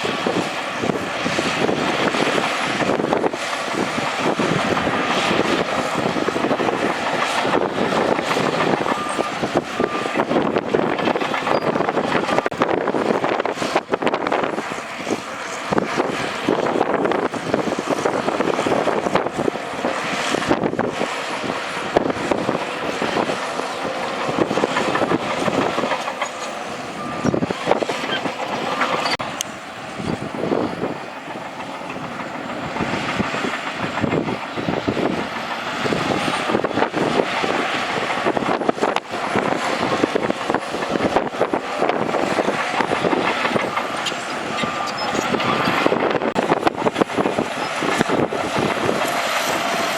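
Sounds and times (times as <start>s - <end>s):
bulldozer diesel engine under load: 0.0s - 49.9s
steel tracks clanking: 0.0s - 49.9s.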